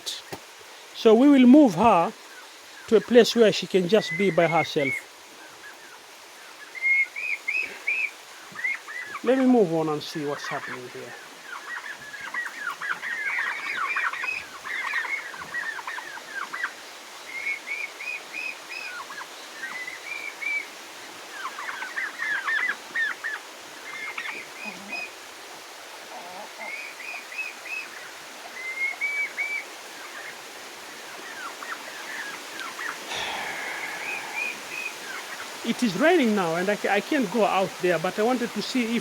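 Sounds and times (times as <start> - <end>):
rain hissing: 0.0 - 11.5, 29.4 - 39.0
poultry chirping: 11.5 - 16.7.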